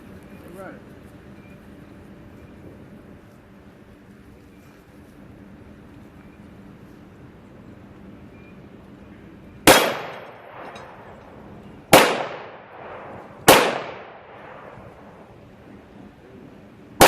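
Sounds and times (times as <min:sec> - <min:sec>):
pistol shots: 0:09.6 - 0:11.2, 0:11.9 - 0:15.2.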